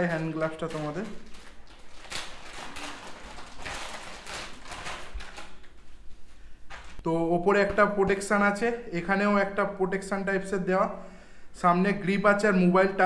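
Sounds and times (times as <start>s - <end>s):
gloves rustling: 0.0s - 7.9s.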